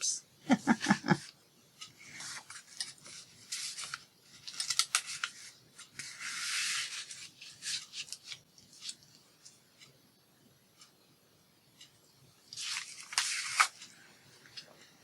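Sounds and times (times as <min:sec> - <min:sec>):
paper rustling and sliding: 0:02.1 - 0:09.1, 0:12.5 - 0:13.9
paper crinkles and taps: 0:02.1 - 0:09.9, 0:12.5 - 0:13.9.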